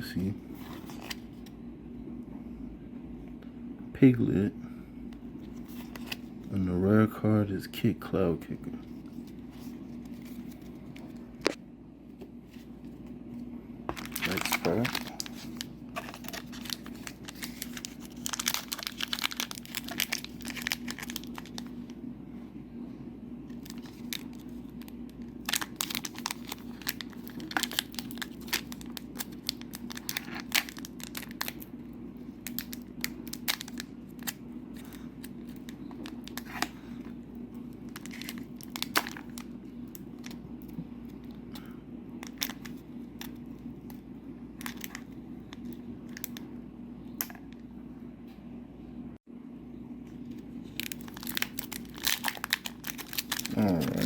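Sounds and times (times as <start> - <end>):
steady low hum: 0.0 - 54.0
cards being handled: 13.9 - 20.6
foil pack tearing and crinkling: 13.9 - 21.7, 23.6 - 31.7, 37.9 - 39.5, 50.6 - 54.0.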